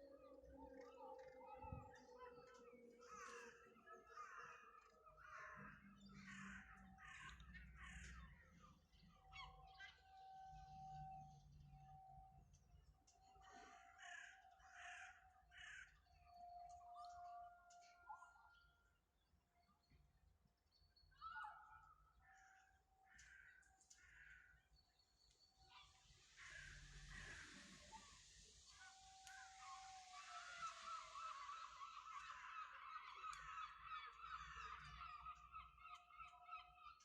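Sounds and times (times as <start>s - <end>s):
bird harsh calls: 25.6s - 37.0s.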